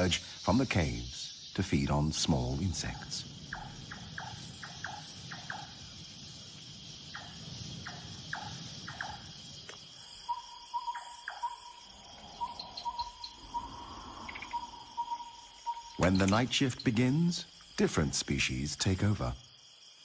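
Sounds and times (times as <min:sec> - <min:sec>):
crickets chirring: 0:00.0 - 0:20.0.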